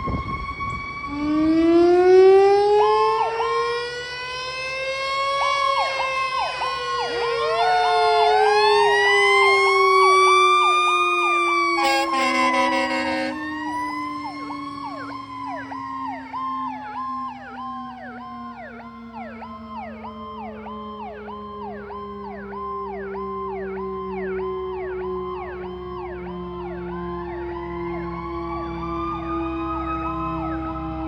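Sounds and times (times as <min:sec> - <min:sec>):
fire engine sirens wailing and yelping: 0:00.0 - 0:31.0
horn blast: 0:11.7 - 0:13.6.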